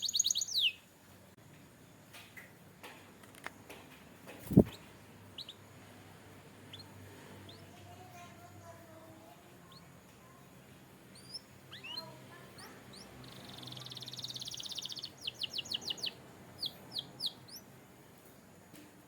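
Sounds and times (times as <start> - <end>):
canary singing: 0.0 - 0.9, 4.5 - 5.8, 6.6 - 17.8.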